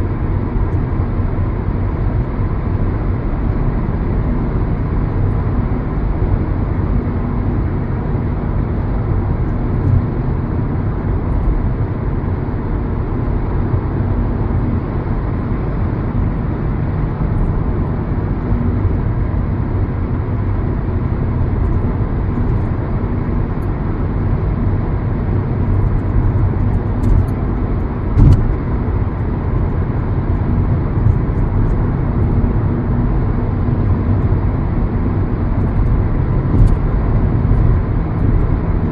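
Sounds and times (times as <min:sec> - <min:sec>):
car engine hum: 0:00.0 - 0:38.9
road noise: 0:00.0 - 0:38.9
car bump: 0:28.2 - 0:28.6.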